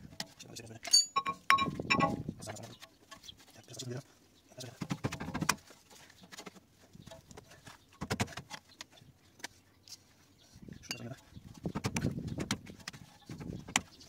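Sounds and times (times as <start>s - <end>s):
metal clinks of hand tools: 0.9s - 2.2s.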